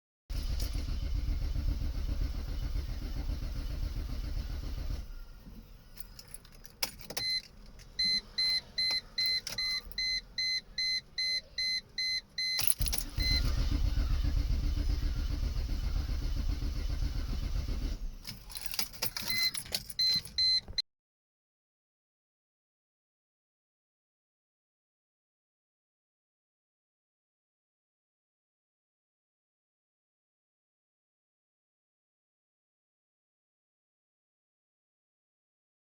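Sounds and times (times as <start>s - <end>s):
car engine cranking without starting: 0.3s - 10.9s, 12.4s - 20.8s
keys clicking in ignition: 0.4s - 1.0s, 5.8s - 14.0s, 17.7s - 20.8s
car warning chime beeping: 7.2s - 13.7s, 19.2s - 20.8s.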